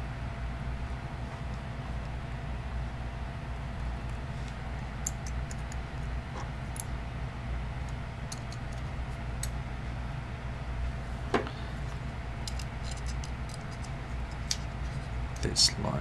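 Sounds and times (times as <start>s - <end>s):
steady low hum: 0.0s - 16.0s
metal knives clicking and tapping: 12.4s - 13.8s.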